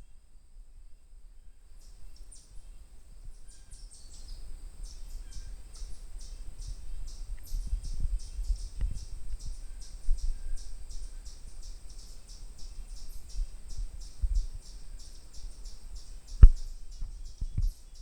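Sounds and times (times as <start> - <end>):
low rumble on microphone: 0.0 - 18.0.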